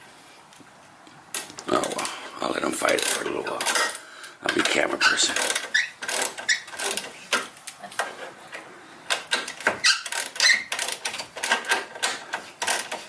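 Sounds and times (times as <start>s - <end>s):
metal bolt squeaking and clicking: 3.0s - 7.5s, 9.1s - 13.0s.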